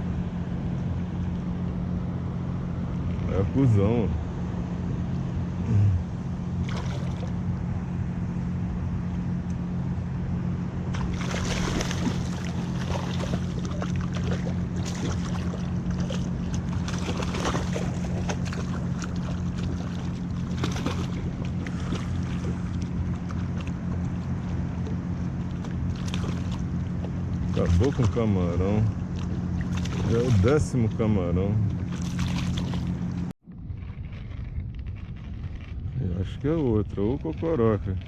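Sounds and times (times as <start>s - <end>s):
steady low hum: 0.0s - 38.0s
water lapping against kayak hull: 0.0s - 38.0s
small splashes and knocks: 6.6s - 7.4s, 10.9s - 28.3s, 28.9s - 30.8s, 31.7s - 35.8s.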